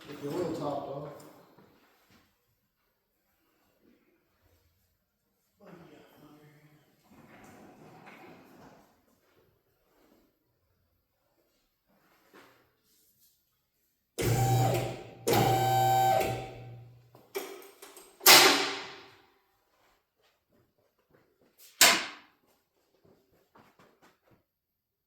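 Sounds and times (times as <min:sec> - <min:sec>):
electric motor humming: 0:14.2 - 0:16.8.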